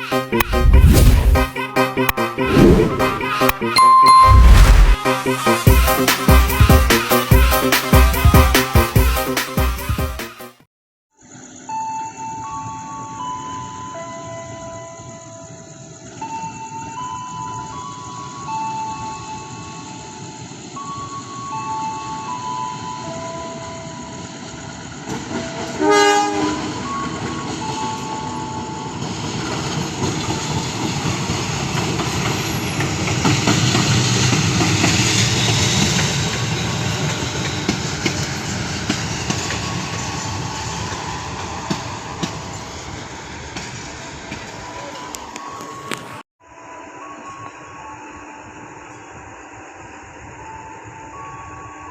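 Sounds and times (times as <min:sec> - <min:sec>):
station chime melody: 0:03.8 - 0:05.0
train horn blast: 0:25.7 - 0:26.8.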